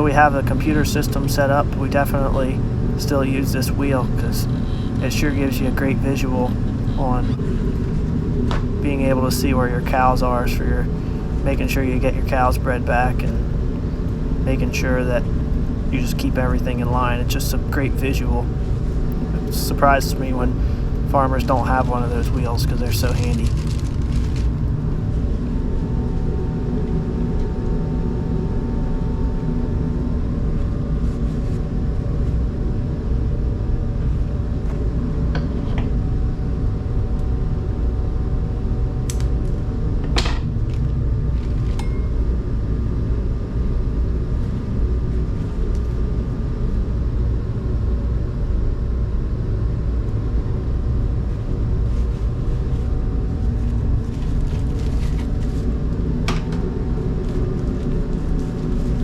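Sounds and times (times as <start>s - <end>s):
engine running low rumble: 0.0s - 29.3s.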